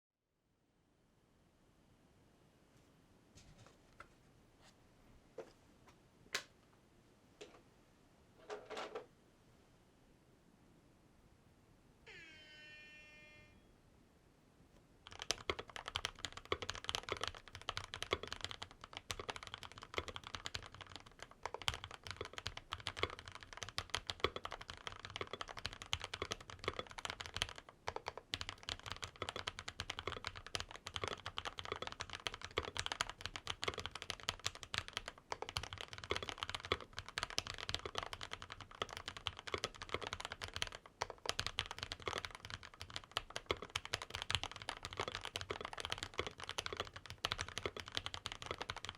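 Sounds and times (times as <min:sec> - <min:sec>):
fast typing on mechanical keyboard: 0:15.0 - 0:48.9.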